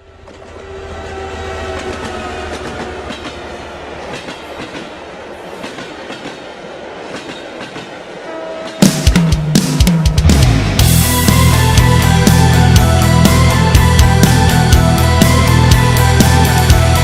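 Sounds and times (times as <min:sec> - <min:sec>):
train wheels clattering over rail joints: 0:01.7 - 0:08.0.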